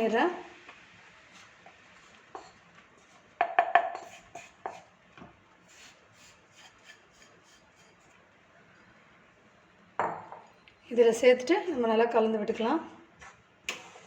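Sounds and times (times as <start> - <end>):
spoon knocking on metal pan: 3.4 - 4.0.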